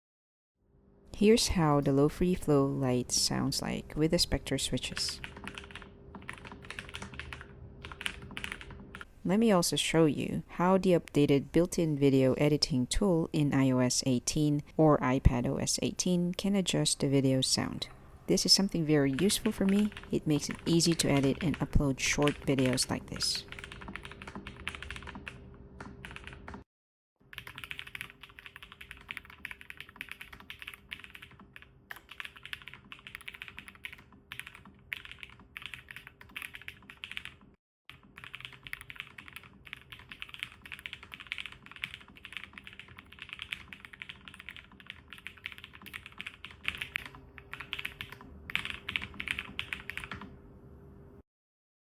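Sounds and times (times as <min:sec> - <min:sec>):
mechanical keyboard typing: 0:04.9 - 0:09.1, 0:19.0 - 0:26.6, 0:27.3 - 0:50.3.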